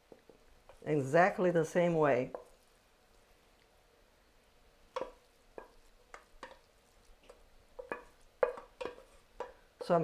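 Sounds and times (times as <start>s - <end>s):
utensil scraping a pan: 5.0s - 10.0s.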